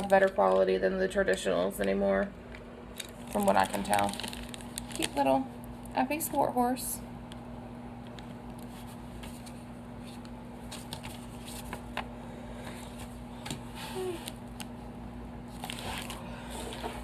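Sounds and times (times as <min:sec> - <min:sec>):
plastic clicks and packaging crinkles: 0:00.0 - 0:06.0, 0:08.0 - 0:12.1, 0:15.5 - 0:17.0
steady low hum: 0:00.0 - 0:17.0.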